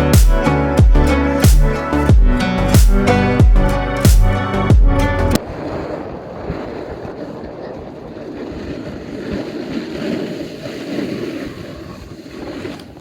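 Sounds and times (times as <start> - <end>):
wind on microphone: 0.0 - 13.0
skis scraping over snow: 5.6 - 13.0.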